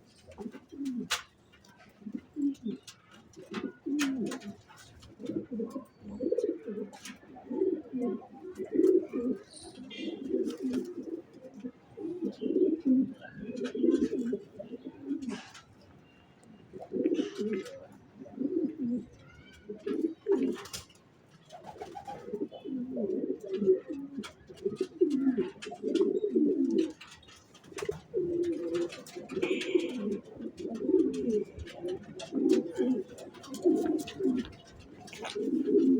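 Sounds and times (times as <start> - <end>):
pigeons cooing: 0.0 - 15.9, 16.6 - 35.9
small clicks and rustles: 23.4 - 35.9.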